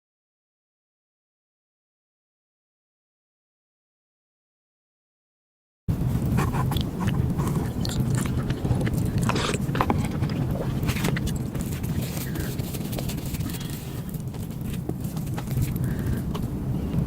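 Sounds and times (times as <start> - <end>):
person chewing food: 5.9 - 17.0.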